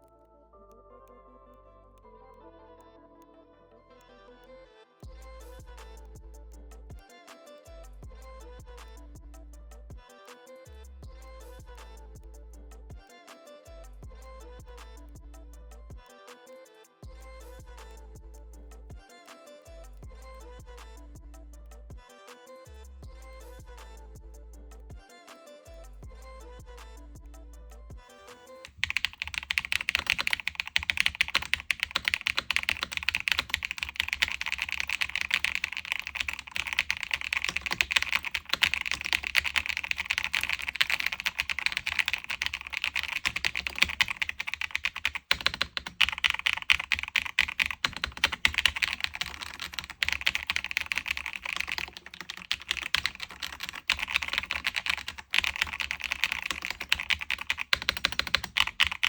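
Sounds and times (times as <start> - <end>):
mechanical keyboard typing: 28.6 - 59.0.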